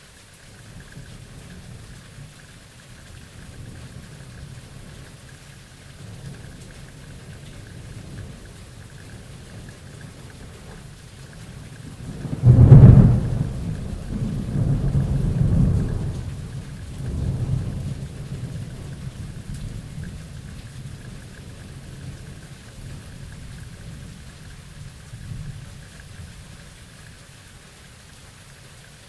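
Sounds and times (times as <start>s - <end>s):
steady rain: 0.0s - 29.0s
thunder rumbling: 6.0s - 26.5s.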